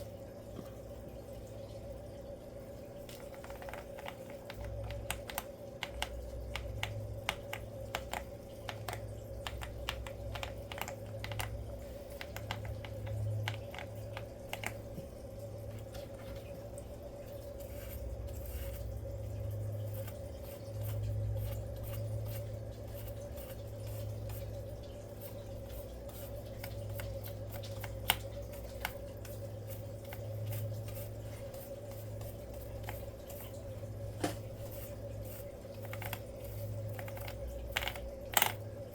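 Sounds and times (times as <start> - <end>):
steady hum: 0.0 - 38.9
keyboard keycaps clicking: 3.1 - 11.6.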